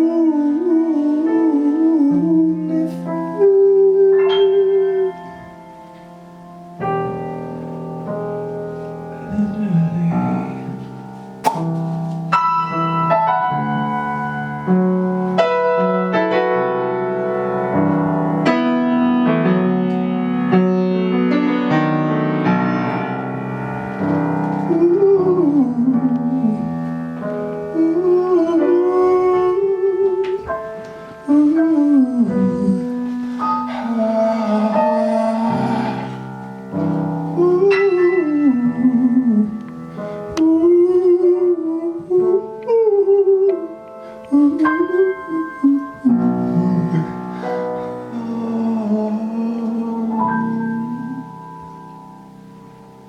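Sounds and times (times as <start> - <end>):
piano chords and melody: 0.0 - 53.0
wordless vocal sliding between pitches: 9.1 - 11.8, 31.3 - 36.6, 44.3 - 51.4.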